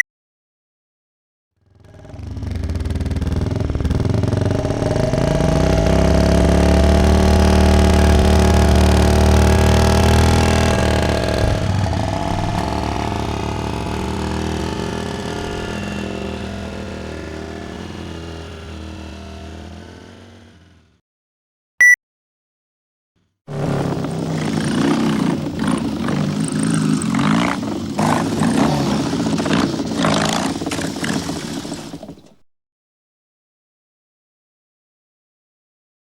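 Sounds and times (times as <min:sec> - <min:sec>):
motorcycle engine running: 0:01.6 - 0:21.0, 0:23.5 - 0:29.3.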